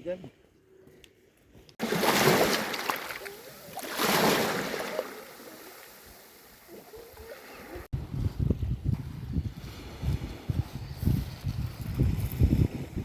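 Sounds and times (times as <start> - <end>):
sea waves washing onto shore: 1.8 - 7.9.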